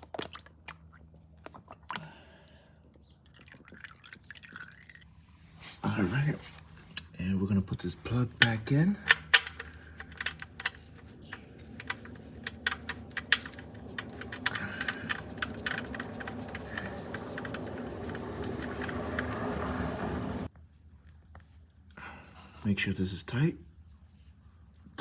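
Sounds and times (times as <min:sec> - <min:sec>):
metallic clicks of drain plug threading: 0:08.3 - 0:17.6.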